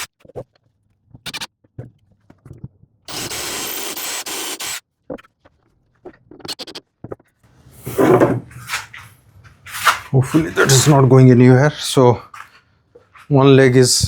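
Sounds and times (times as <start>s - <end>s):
impact driver driving screw: 3.1s - 4.8s
scrape: 7.8s - 11.0s.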